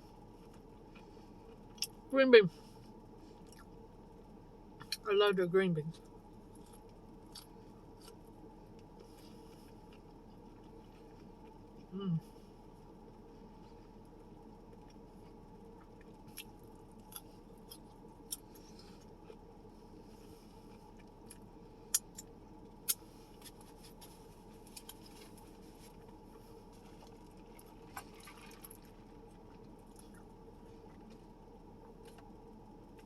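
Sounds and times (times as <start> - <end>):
steady low background hum: 0.0 - 33.0
quiet chewing with mouth clicks: 13.4 - 22.3, 22.9 - 32.3.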